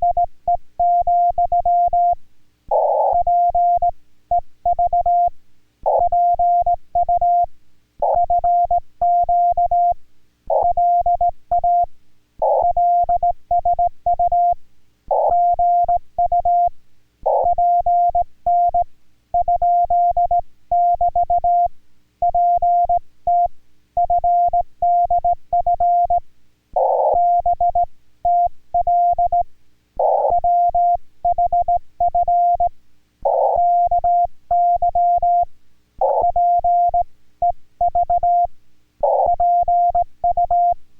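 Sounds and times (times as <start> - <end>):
morse code beeps: 33.3 - 40.8.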